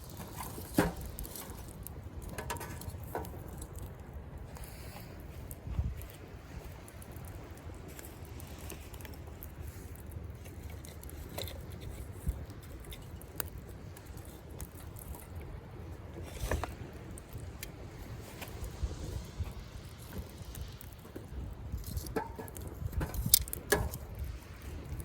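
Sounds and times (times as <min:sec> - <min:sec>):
campfire crackling and popping: 0:00.0 - 0:25.0
sea waves on shore: 0:14.1 - 0:21.8.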